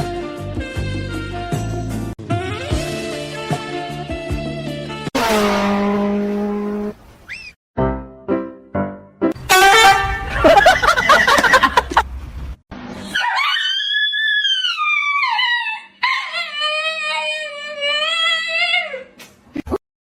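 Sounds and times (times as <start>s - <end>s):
music: 0.0s - 5.1s, 7.8s - 10.4s
dog howling: 13.1s - 19.0s.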